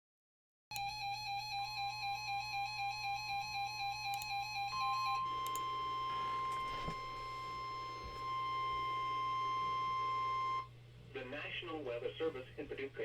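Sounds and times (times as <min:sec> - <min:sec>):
steady high alarm tone: 0:00.7 - 0:10.8.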